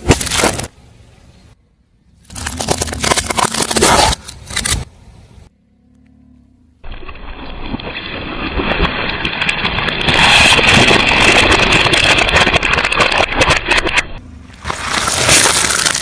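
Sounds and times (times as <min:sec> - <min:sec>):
objects crushed under car tyre: 0:08.6 - 0:14.0, 0:14.6 - 0:16.0.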